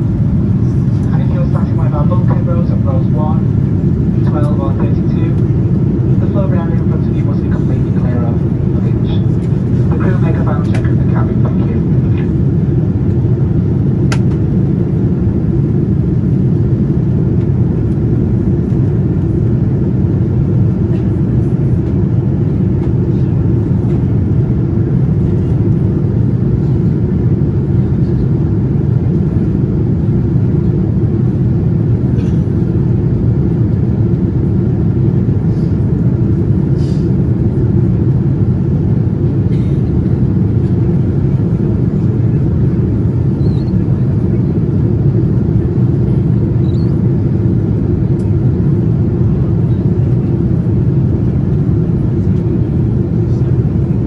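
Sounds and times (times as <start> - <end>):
airplane cabin rumble: 0.0 - 54.0
jet engines running: 0.0 - 54.0.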